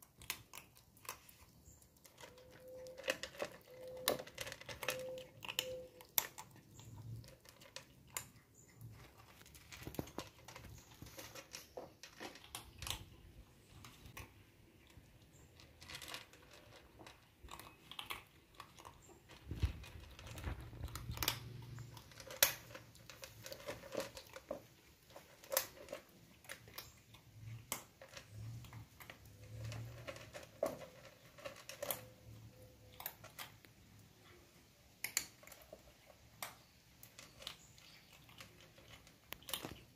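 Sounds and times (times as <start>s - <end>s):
kittens chewing and lapping: 0.0s - 39.9s.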